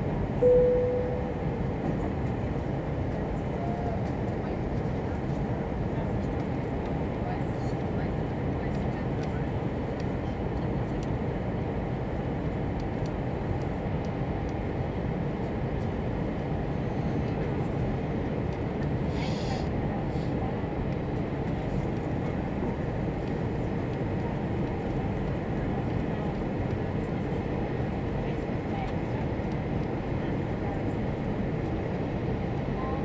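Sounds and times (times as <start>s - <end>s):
aircraft engines and airflow roar: 0.0s - 33.0s.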